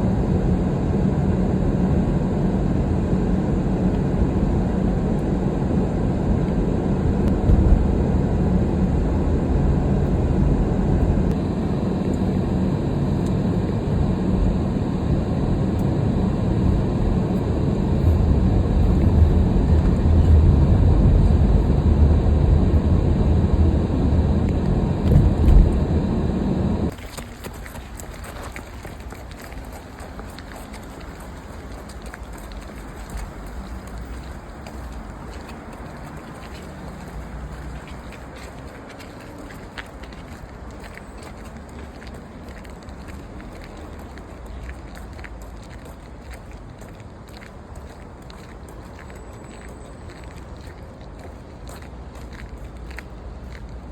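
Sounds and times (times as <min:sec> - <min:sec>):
faint hum: 0:00.0 - 0:27.0
vehicle driving rumble: 0:00.0 - 0:53.9.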